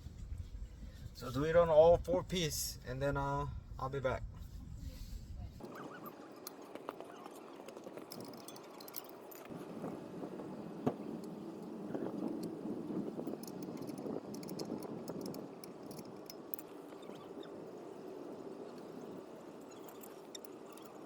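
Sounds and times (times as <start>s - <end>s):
small metal clinks: 6.2s - 9.6s, 13.2s - 17.3s, 19.5s - 21.0s.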